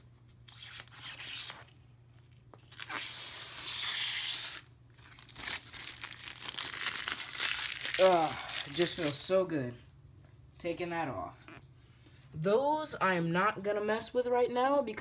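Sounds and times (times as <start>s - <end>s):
plastic film peeling: 0.4s - 1.8s, 2.6s - 9.3s.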